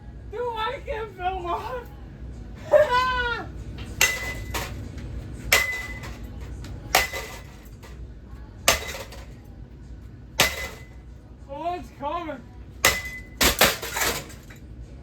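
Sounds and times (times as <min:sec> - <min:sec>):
metallic impacts with ringing: 0:03.8 - 0:08.0, 0:08.7 - 0:09.4, 0:10.4 - 0:11.0, 0:12.8 - 0:14.5.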